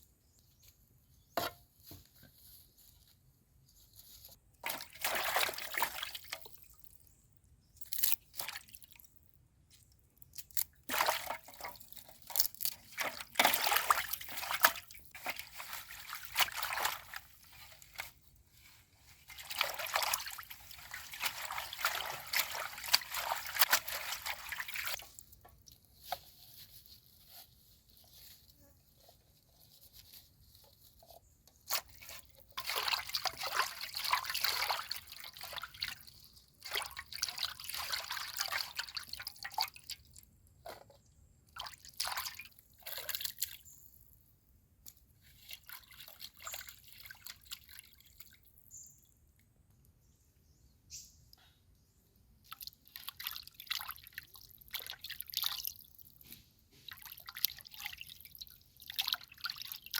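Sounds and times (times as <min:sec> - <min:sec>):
water splashing and dripping: 0:04.6 - 0:07.0, 0:10.3 - 0:18.2, 0:19.2 - 0:25.8, 0:31.7 - 0:40.2, 0:41.6 - 0:43.6, 0:52.4 - 0:56.2, 0:56.8 - 0:59.9.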